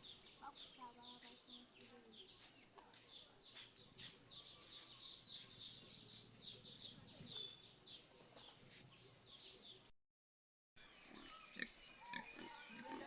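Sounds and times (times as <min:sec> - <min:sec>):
faint bird chirping: 0:00.0 - 0:09.9.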